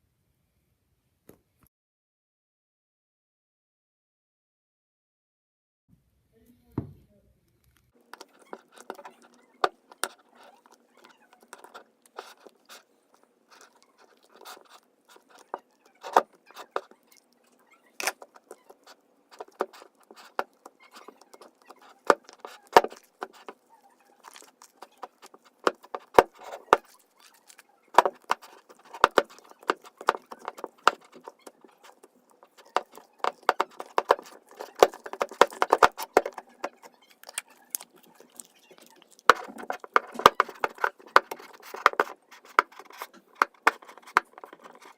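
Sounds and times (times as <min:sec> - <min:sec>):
slime squished by hand: 0:08.2 - 0:44.9.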